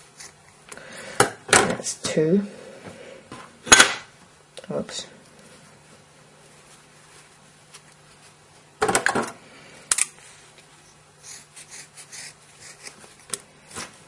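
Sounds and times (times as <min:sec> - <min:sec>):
rustles and clicks of handling: 0:04.2 - 0:11.0
soft rustling: 0:05.2 - 0:08.8.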